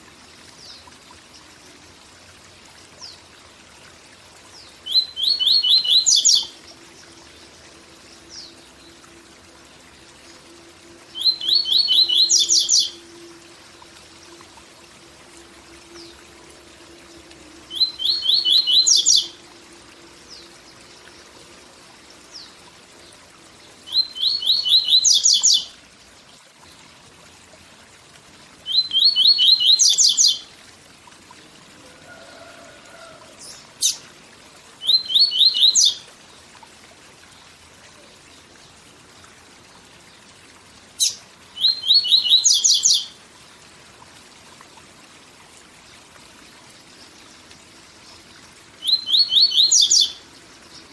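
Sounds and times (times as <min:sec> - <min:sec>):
faint waterfall: 0:00.0 - 0:50.9
bird singing trilling song: 0:04.5 - 0:07.0, 0:11.1 - 0:13.3, 0:17.6 - 0:19.4, 0:23.7 - 0:25.8, 0:28.6 - 0:30.5, 0:34.8 - 0:36.1, 0:41.0 - 0:43.2, 0:48.8 - 0:50.9.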